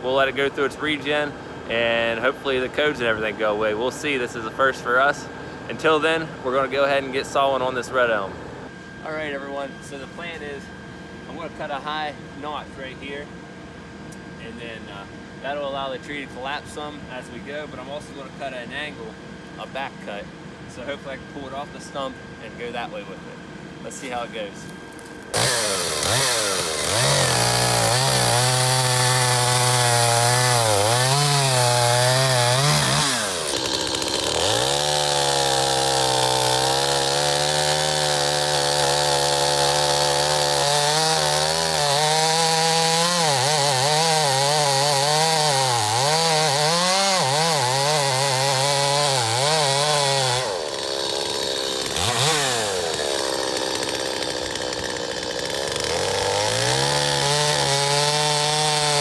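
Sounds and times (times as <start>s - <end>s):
chainsaw cutting wood: 0.0s - 8.7s, 24.0s - 59.0s.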